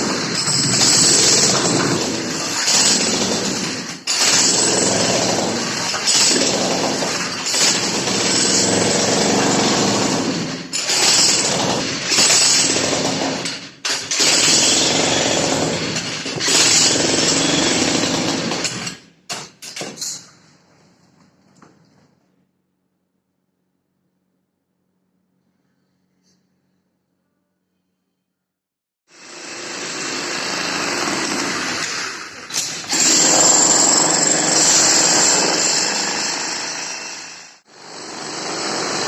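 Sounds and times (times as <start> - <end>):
jackhammer running: 0.0 - 18.9, 29.2 - 39.0.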